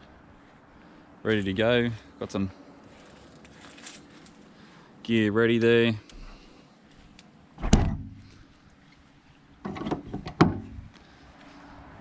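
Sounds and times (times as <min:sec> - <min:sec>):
door slamming: 0:07.6 - 0:08.2, 0:09.8 - 0:10.8
rattling knocks: 0:09.7 - 0:10.8.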